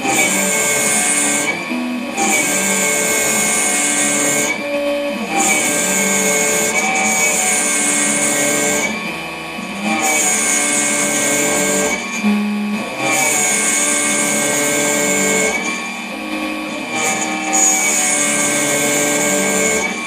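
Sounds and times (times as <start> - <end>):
machining spindle whine: 0.0 - 20.0.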